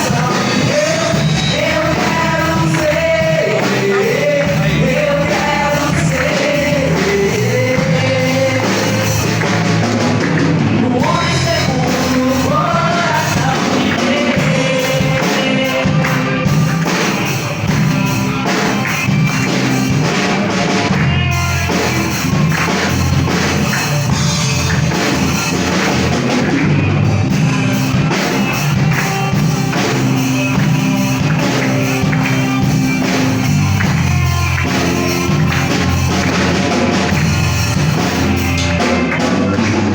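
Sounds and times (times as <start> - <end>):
person singing: 0.0 - 9.4, 10.6 - 16.4
praise band playing: 0.0 - 39.9.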